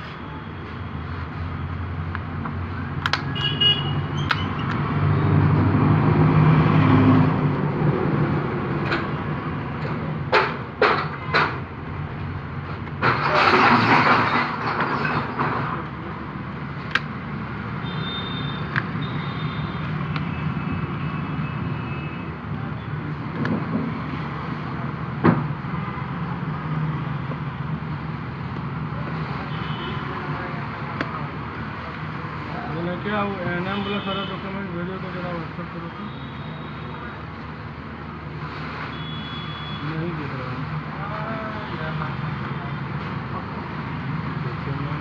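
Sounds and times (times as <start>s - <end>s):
vehicles passing: 0.0s - 45.0s
sharp clicks: 3.0s - 3.3s, 16.8s - 17.2s.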